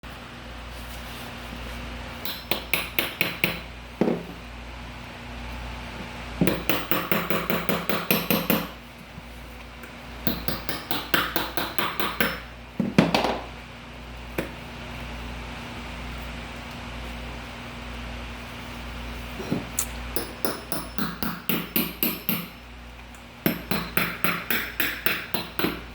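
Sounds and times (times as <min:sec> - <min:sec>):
hammer striking: 0:02.2 - 0:04.3, 0:06.4 - 0:08.7, 0:10.2 - 0:13.4, 0:20.2 - 0:22.6, 0:23.4 - 0:25.9.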